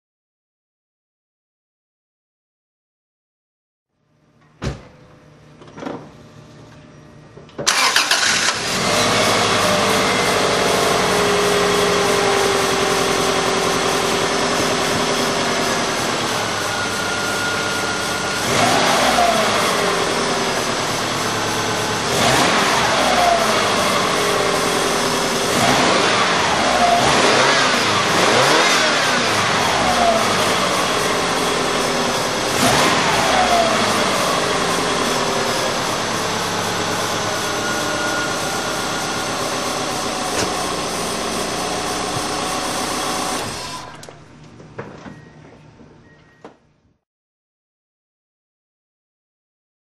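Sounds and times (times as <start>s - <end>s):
engine starting and idling: 7.6s - 44.3s
engine revving: 7.7s - 44.1s.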